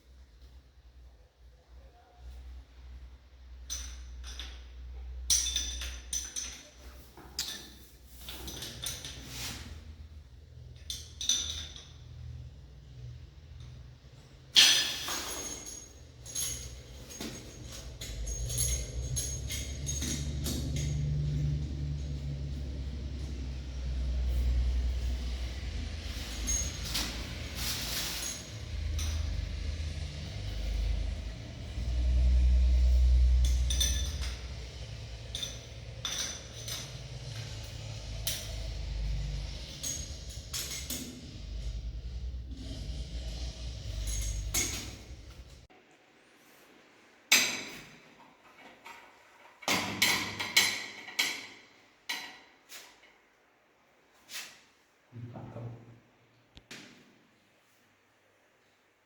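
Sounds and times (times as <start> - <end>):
short metallic clinks: 32.6 - 41.8.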